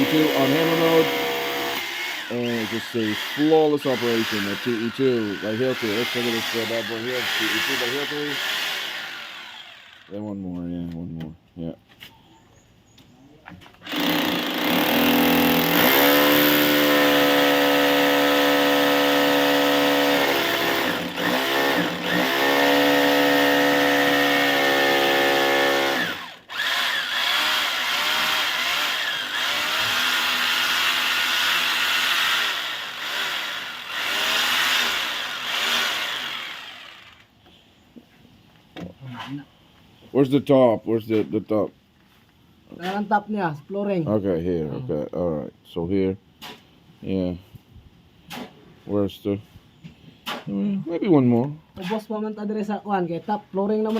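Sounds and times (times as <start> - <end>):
rotary hammer drilling: 0.0 - 10.2, 13.8 - 37.3.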